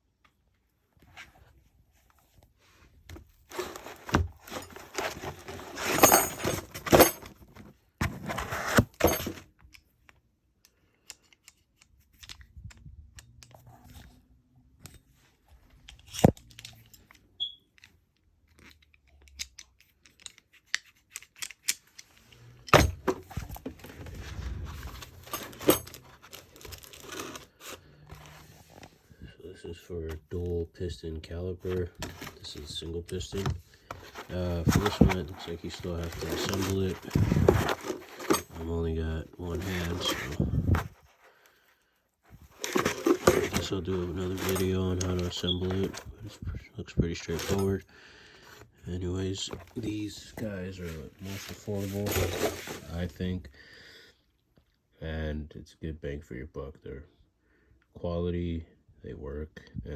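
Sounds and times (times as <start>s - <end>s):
rustling and scraping: 1.0s - 9.5s, 19.9s - 29.4s, 31.3s - 47.8s, 48.4s - 53.2s
metal parts knocking and clinking: 3.5s - 9.4s, 22.7s - 24.1s, 25.0s - 27.4s, 32.0s - 38.7s, 42.6s - 46.1s.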